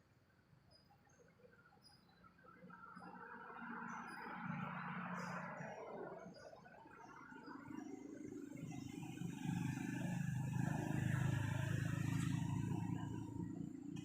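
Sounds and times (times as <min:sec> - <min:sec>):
vehicle engine passing: 0:03.1 - 0:06.4, 0:07.0 - 0:14.0.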